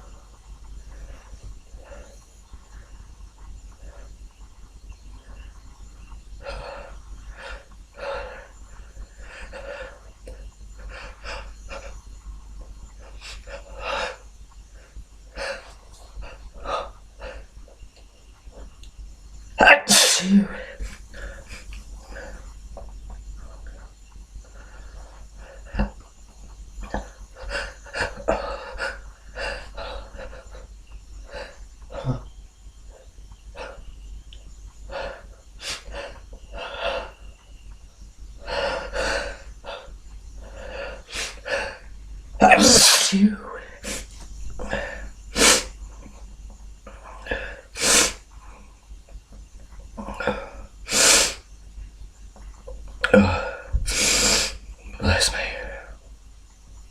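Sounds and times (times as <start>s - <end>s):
man sniffling: 19.6s - 22.4s, 42.4s - 45.8s, 50.2s - 51.4s, 53.1s - 54.6s.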